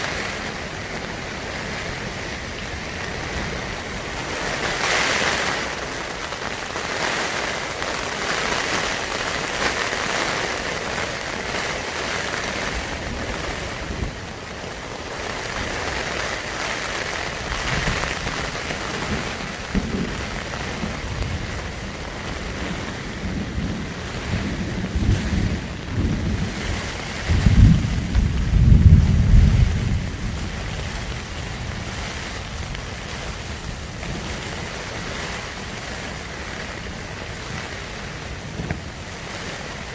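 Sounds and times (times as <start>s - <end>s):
heavy rain: 0.0s - 39.9s
thunder rolling: 12.5s - 34.4s, 38.4s - 39.0s.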